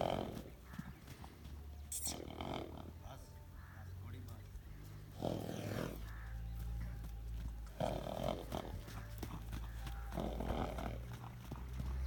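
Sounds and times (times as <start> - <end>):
horse hooves clip-clopping: 0.0 - 1.9, 4.6 - 12.0.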